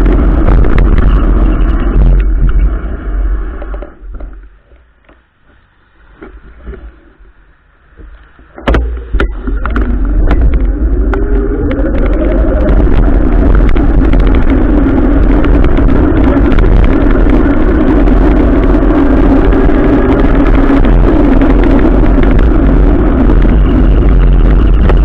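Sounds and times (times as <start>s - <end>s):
motorcycle accelerating: 0.0s - 3.8s, 8.9s - 25.0s
heavy rushing noise: 0.0s - 25.0s.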